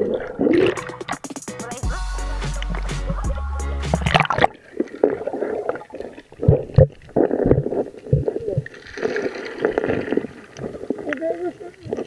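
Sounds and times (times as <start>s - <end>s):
sea water sloshing and gurgling: 0.0s - 0.8s, 3.9s - 12.0s
low thumps: 0.8s - 4.4s.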